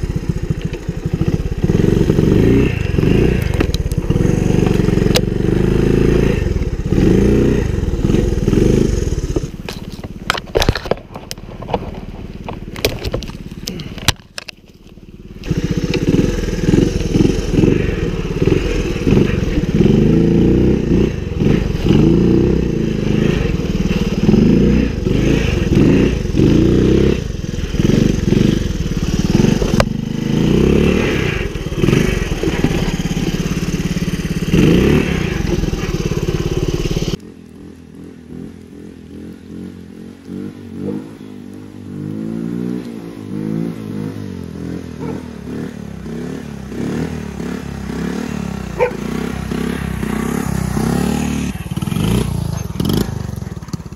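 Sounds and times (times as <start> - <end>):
small engine revving: 0.0 - 10.8, 15.2 - 53.9
distant engine rising and falling: 15.3 - 38.3, 40.4 - 53.5.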